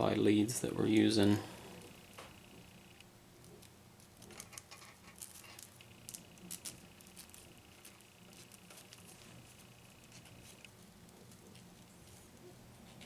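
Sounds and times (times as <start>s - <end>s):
faint high whine: 0.0s - 3.2s, 5.7s - 10.7s.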